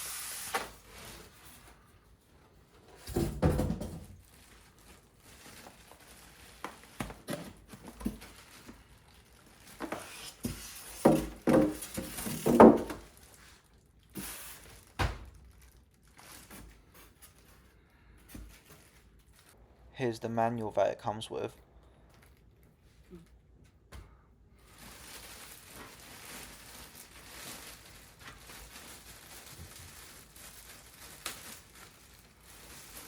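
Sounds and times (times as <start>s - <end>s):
boxes thunking and knocking: 2.9s - 4.2s, 7.0s - 8.3s, 9.8s - 13.2s.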